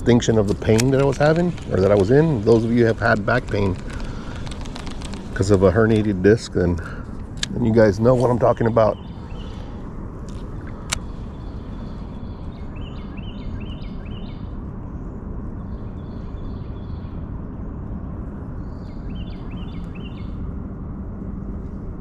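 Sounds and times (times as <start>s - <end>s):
songbird chirping: 0.0s - 6.6s, 7.5s - 9.8s, 10.5s - 14.6s, 18.6s - 20.4s
low outdoor rumble: 0.0s - 22.0s.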